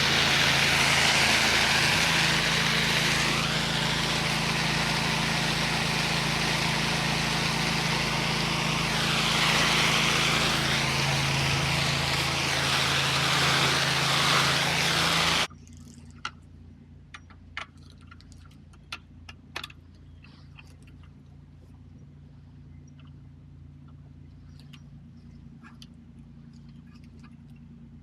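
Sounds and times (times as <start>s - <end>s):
pressure washer engine running: 0.0s - 15.5s
water spray hissing: 0.0s - 15.5s.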